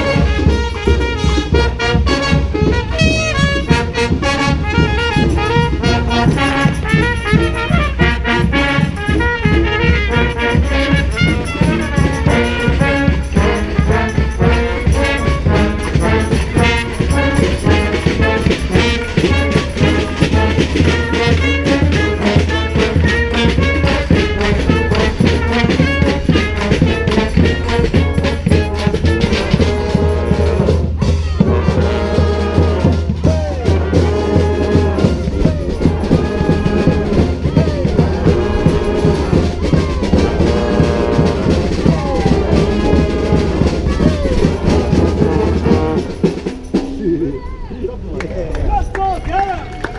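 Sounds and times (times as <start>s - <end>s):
brass band playing: 0.0s - 47.6s
steady drum beat: 0.0s - 47.6s
trumpets and trombones: 0.0s - 47.6s.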